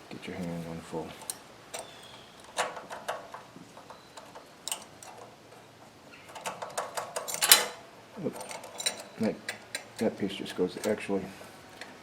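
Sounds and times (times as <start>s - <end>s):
metal engine parts clicking: 1.2s - 11.1s.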